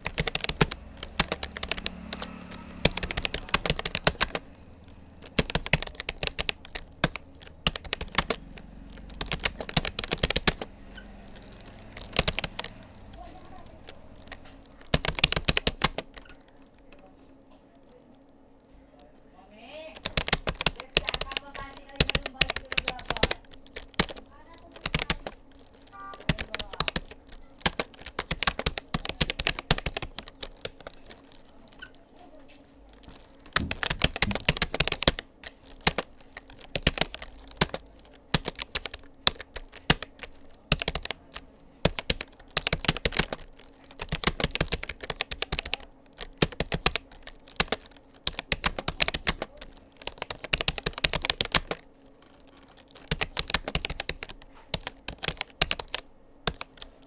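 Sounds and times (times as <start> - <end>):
keyboard key clicks: 0.0 - 13.2, 33.0 - 41.2, 41.8 - 51.8.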